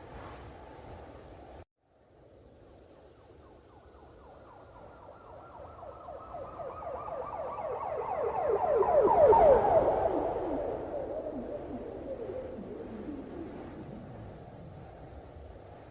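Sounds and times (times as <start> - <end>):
police siren yelping: 5.0 - 14.4.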